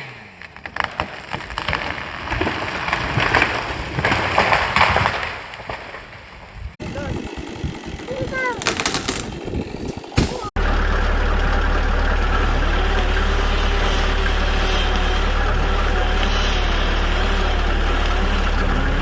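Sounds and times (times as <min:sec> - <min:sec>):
large engine running: 0:06.8 - 0:19.0.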